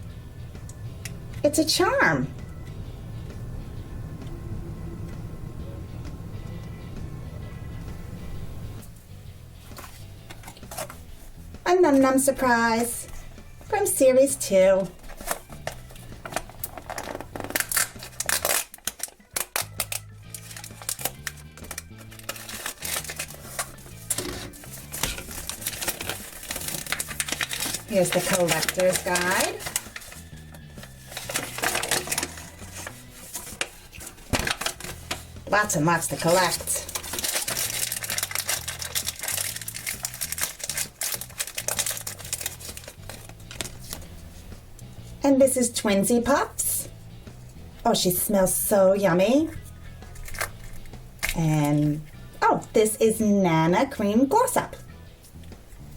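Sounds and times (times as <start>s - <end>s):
background music low notes: 0.0s - 55.9s
plastic packaging crinkling: 15.0s - 44.1s.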